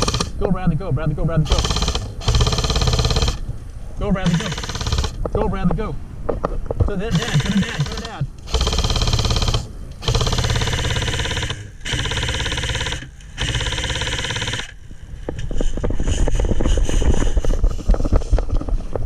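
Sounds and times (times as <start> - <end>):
airsoft gun firing bursts: 0.0 - 0.4, 1.5 - 3.5, 4.2 - 5.2, 7.1 - 14.8.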